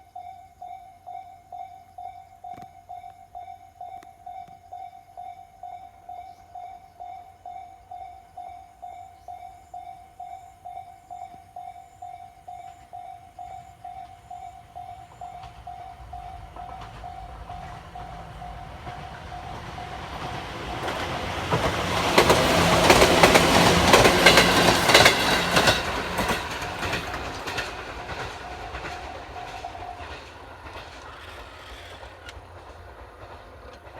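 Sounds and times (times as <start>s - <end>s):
level crossing alarm ringing: 0.1s - 30.4s
train wheels clattering over rail joints: 12.1s - 33.9s.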